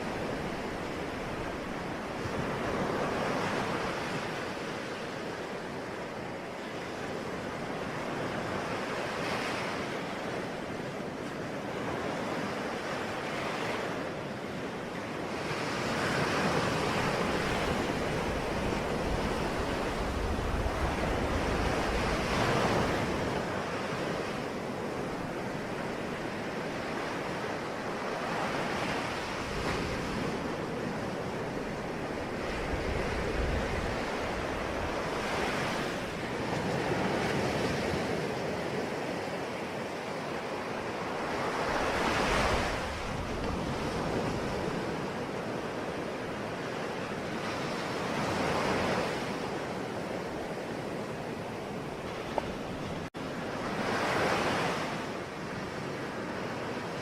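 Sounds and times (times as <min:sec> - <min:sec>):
ocean waves washing on shore: 0:00.0 - 0:57.0
wind on microphone: 0:15.2 - 0:57.0.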